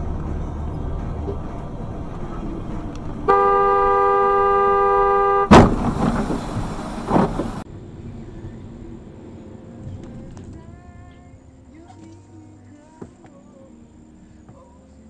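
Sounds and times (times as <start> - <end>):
road noise: 0.0 - 15.0
car horn: 3.2 - 7.6
car crash impact: 5.0 - 7.6
crunching and thump: 5.5 - 7.6.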